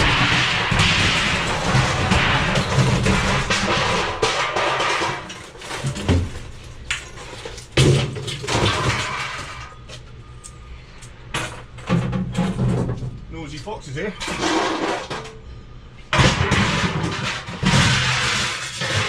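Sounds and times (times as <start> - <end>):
scrap metal clanking: 0.0 - 9.8, 14.2 - 15.5, 16.2 - 19.0.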